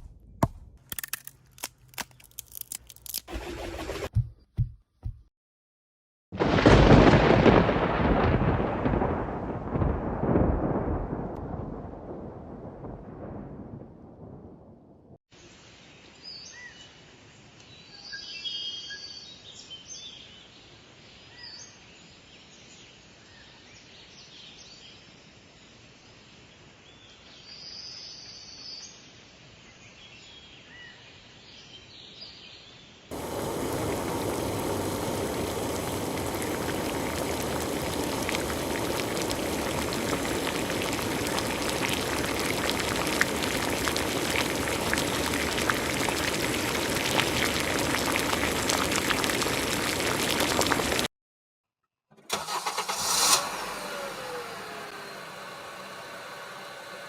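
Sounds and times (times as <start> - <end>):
dense crackling hiss: 33.1 - 51.1.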